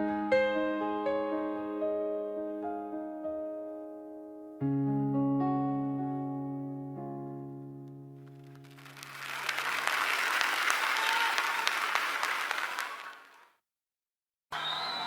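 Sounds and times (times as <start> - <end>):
electric piano chord: 0.0 - 9.0
music: 0.0 - 10.8
audience applause: 8.5 - 13.6, 14.5 - 15.0.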